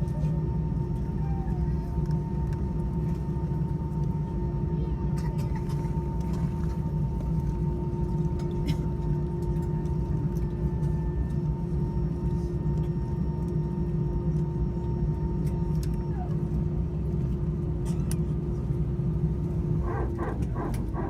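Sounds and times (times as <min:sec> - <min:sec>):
constant tone: 0:01.8 - 0:21.0
machinery drone: 0:18.5 - 0:21.0.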